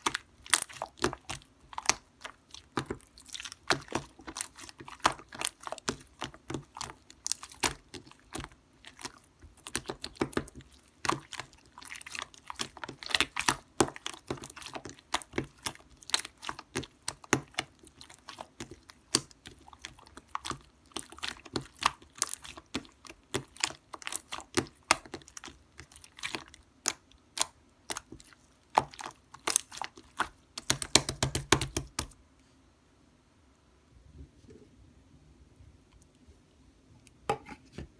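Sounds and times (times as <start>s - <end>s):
slime squished by hand: 0.0s - 32.2s
wet clicks and pops: 28.8s - 32.2s.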